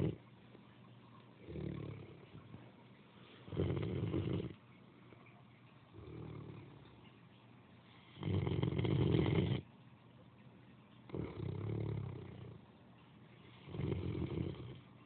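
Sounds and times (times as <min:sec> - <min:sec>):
dog snoring: 0:00.0 - 0:00.2, 0:01.4 - 0:02.5, 0:03.4 - 0:04.6, 0:05.9 - 0:07.0, 0:08.0 - 0:09.7, 0:11.1 - 0:12.6, 0:13.5 - 0:14.9.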